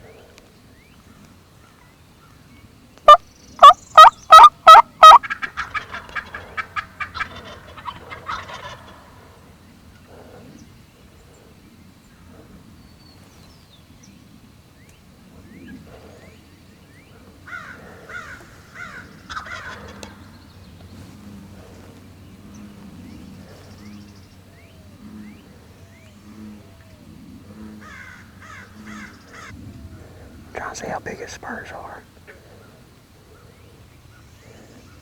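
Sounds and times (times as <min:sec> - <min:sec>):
turkey gobbling: 0:03.1 - 0:09.1.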